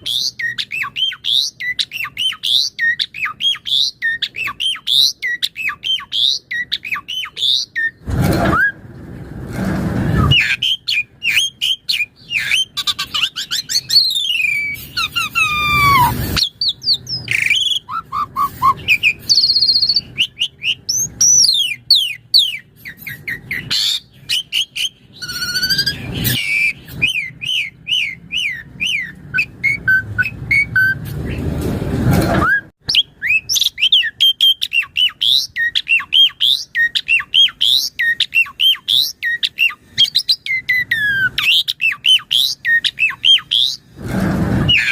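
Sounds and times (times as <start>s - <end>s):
starling singing chirps and whistles: 0.0s - 8.8s, 10.1s - 31.4s, 32.4s - 43.9s, 44.6s - 44.9s
harsh rasping bird calls: 10.0s - 31.5s, 32.9s - 44.9s.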